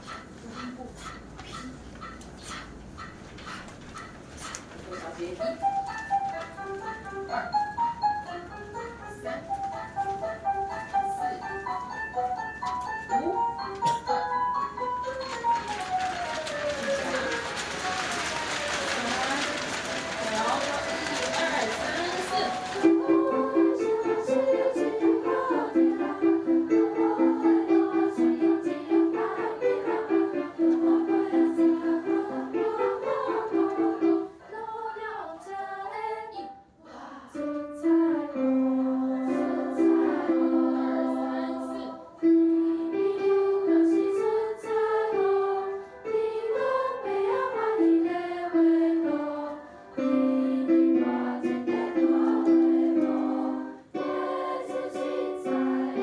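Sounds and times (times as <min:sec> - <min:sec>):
instrumental song accompaniment: 0:05.7 - 0:34.3.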